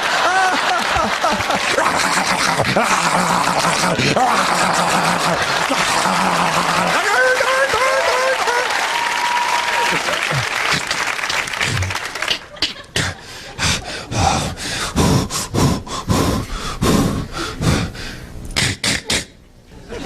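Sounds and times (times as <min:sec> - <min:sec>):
applause: 0:00.0 - 0:12.5
vocal sound effects into microphone: 0:01.7 - 0:07.0, 0:18.6 - 0:19.4.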